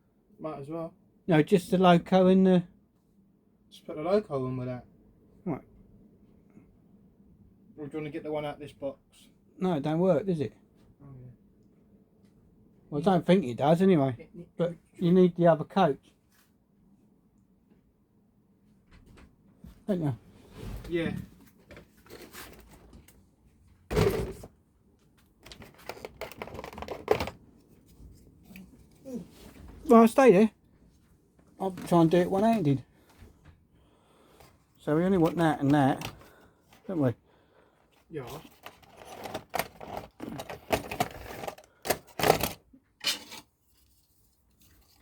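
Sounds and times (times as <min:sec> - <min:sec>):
objects clicking and rattling: 0:25.4 - 0:27.4, 0:38.4 - 0:43.5.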